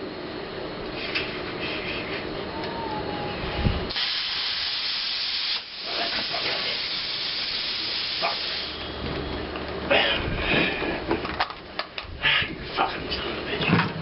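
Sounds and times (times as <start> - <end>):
plasma cutter torch hissing: 3.9 - 9.0.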